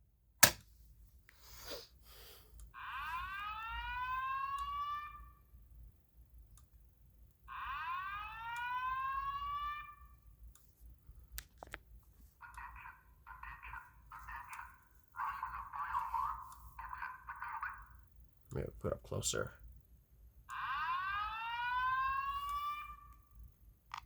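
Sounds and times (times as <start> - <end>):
sharp click: 0.4 - 0.7
slow-whoop alarm tone: 2.7 - 5.5, 7.4 - 10.2, 20.4 - 23.5.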